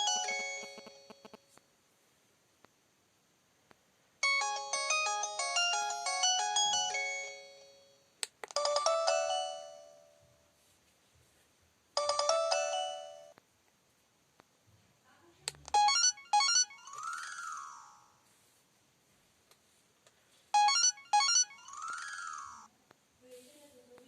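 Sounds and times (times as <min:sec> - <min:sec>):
chiming ringtone phrase: 0:00.0 - 0:01.5, 0:04.2 - 0:07.9, 0:08.6 - 0:10.1, 0:12.0 - 0:13.3, 0:15.8 - 0:18.2, 0:20.6 - 0:22.7
quick electronic ringtone melody: 0:00.0 - 0:01.5, 0:04.2 - 0:07.9, 0:08.6 - 0:10.2, 0:12.0 - 0:13.3, 0:15.8 - 0:18.2, 0:20.6 - 0:22.7.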